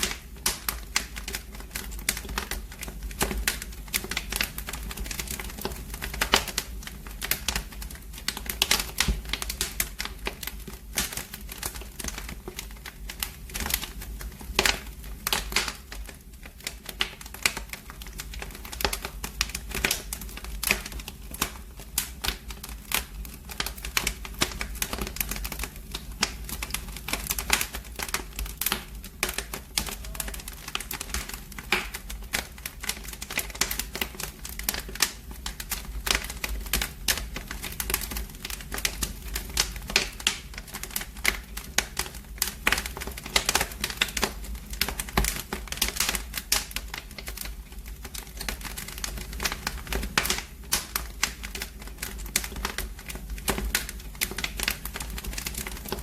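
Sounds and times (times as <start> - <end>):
fire crackling and popping: 0.0 - 56.0
low rumble of fire: 0.0 - 56.0.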